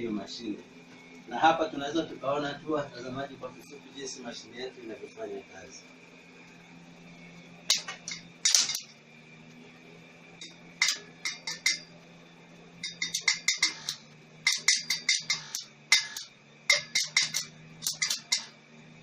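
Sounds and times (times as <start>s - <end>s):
arc welding crackles: 0.0s - 19.0s
welding machine hum: 0.0s - 19.0s.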